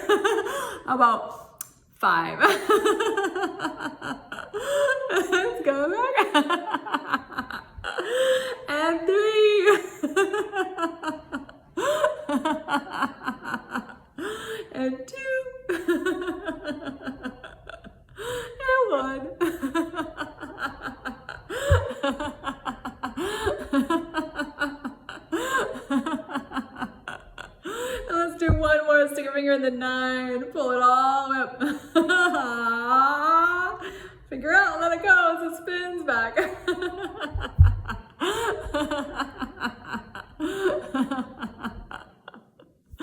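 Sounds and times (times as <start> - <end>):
woman laughing in rhythmic bursts: 19.4 - 28.7, 36.4 - 43.0.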